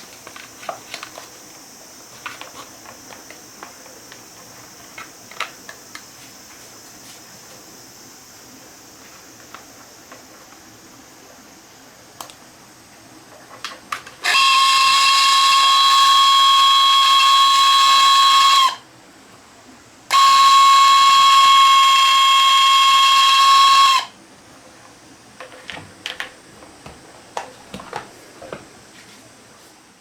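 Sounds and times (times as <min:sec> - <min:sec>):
electric sprayer pump whining: 0:00.0 - 0:07.8, 0:13.9 - 0:18.8, 0:20.1 - 0:24.2.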